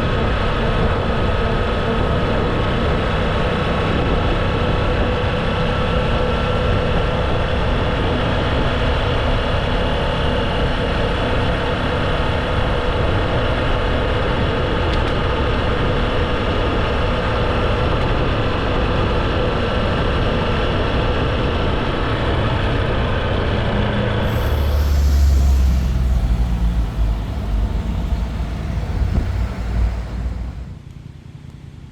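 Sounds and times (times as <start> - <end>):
wind rushing over microphone: 24.2 - 30.8
paramotor engine drone: 24.2 - 31.0.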